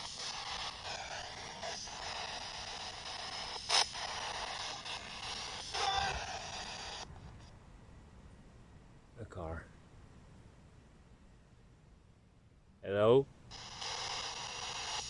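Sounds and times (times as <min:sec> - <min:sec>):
radio static: 0:00.0 - 0:07.1, 0:13.5 - 0:15.0
broken radio broadcast fragments: 0:00.0 - 0:07.5, 0:13.5 - 0:15.0.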